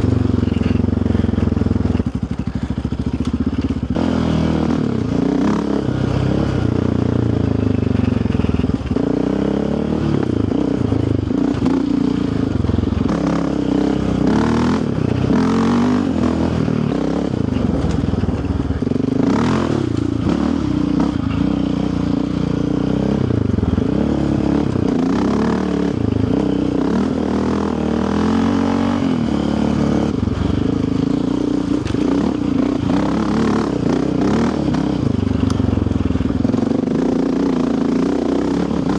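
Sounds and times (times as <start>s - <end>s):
quad engine revving: 0.0s - 38.9s.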